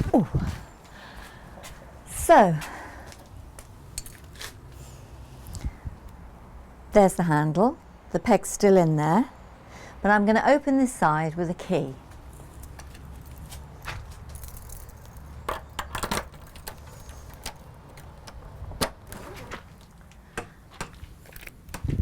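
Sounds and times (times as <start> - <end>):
keys jangling: 14.3 - 17.7.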